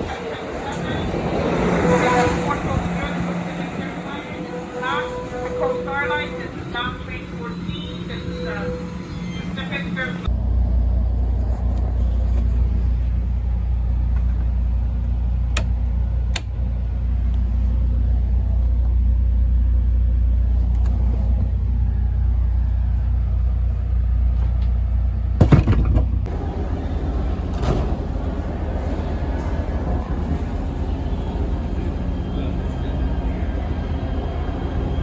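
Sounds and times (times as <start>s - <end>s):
vehicle interior rumble: 10.2s - 31.0s.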